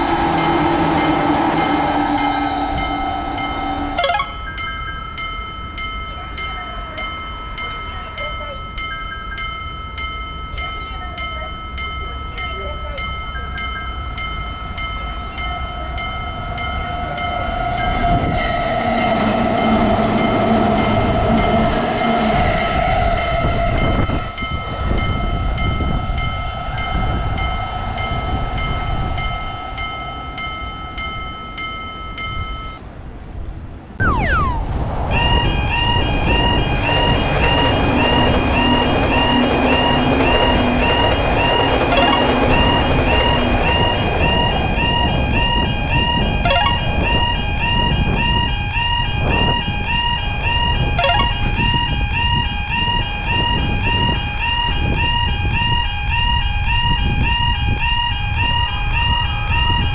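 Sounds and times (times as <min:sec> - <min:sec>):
railroad crossing bell ringing: 0:01.6 - 0:16.8, 0:41.9 - 0:43.1, 0:46.5 - 0:47.2, 0:51.0 - 0:51.7.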